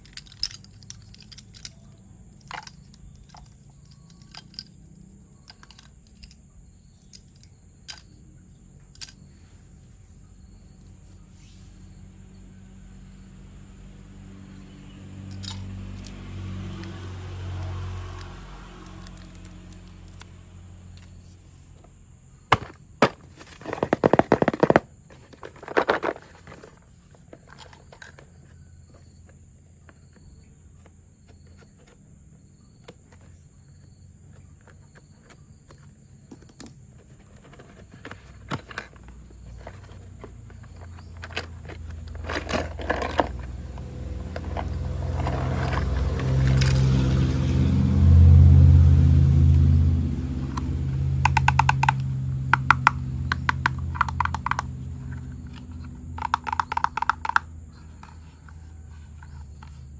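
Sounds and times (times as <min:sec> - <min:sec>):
plastic toy parts clicking: 0:00.0 - 0:04.8, 0:05.4 - 0:06.4, 0:07.0 - 0:08.1, 0:08.9 - 0:09.2, 0:51.2 - 0:58.6
packaging crackling rattle: 0:53.4 - 0:54.7, 0:56.2 - 0:57.4.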